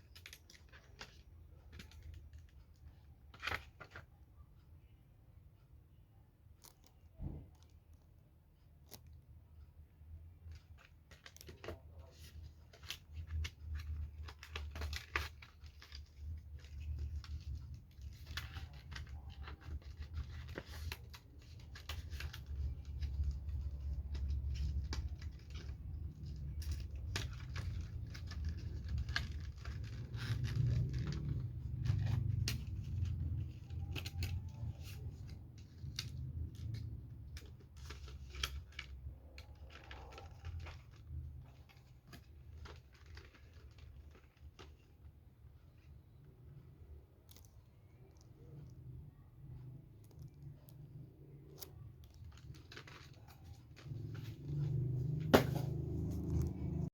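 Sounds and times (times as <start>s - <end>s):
package scraping and tearing: 11.1s - 44.8s, 52.1s - 56.9s
low handling rumble: 53.4s - 56.9s.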